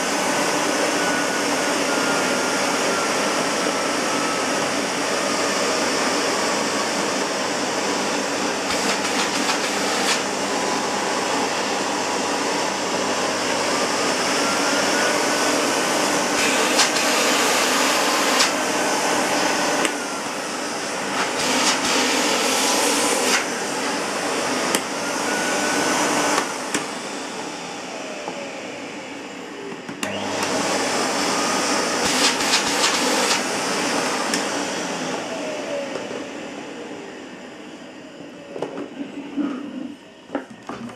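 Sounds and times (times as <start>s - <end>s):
vacuum cleaner running: 0.0s - 40.9s.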